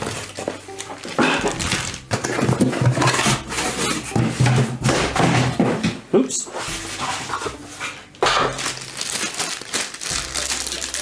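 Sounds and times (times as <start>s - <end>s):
plastic packaging crinkling: 0.0s - 4.2s, 8.2s - 11.0s.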